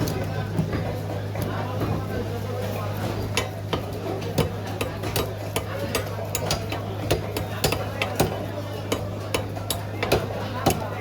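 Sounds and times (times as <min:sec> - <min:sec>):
knife chopping on cutting board: 0:03.7 - 0:11.0.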